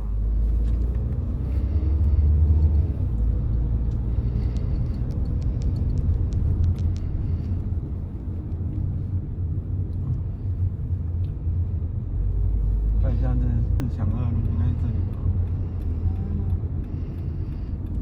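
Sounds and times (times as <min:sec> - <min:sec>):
car road and engine rumble: 0:00.0 - 0:18.0
faint light ticks: 0:11.2 - 0:11.4, 0:13.8 - 0:18.0.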